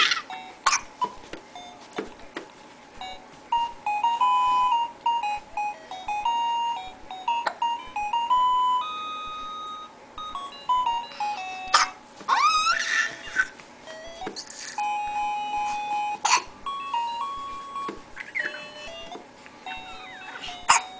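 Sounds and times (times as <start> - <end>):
electronic floor piano beeps: 3.0 - 11.8, 13.9 - 20.9.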